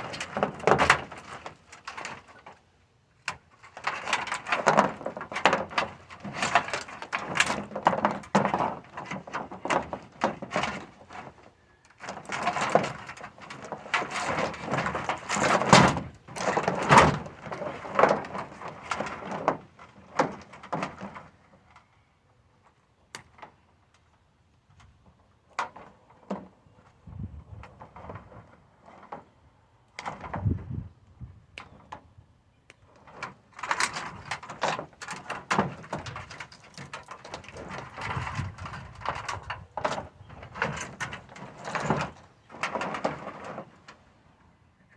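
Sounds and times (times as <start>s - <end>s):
scrap metal scraping and clanking: 3.5s - 21.3s, 33.0s - 44.1s.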